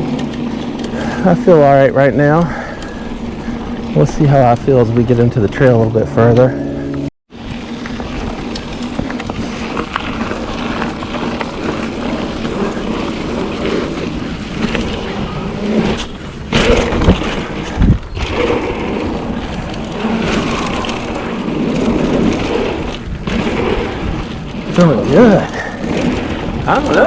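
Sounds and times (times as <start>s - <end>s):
bike rattling over ground: 0.0s - 6.4s, 7.3s - 27.0s
bike tyre and chain noise: 0.0s - 6.5s, 7.3s - 27.0s
wind on microphone: 0.0s - 27.0s
bike knocking on bumps: 7.5s - 24.6s.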